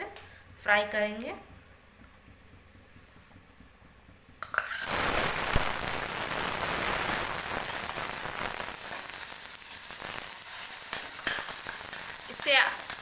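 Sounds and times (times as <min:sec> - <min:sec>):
dry fruits sizzling in oil: 0:04.4 - 0:13.0.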